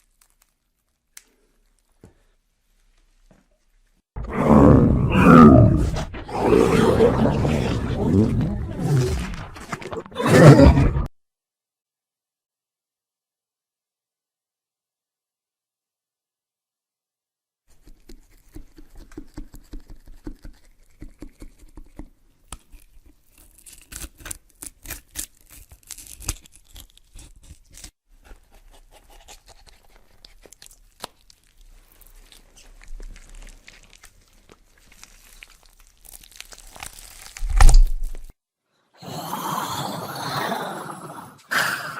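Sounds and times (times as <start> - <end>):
crackling scratching and clicking: 0.0 - 2.0.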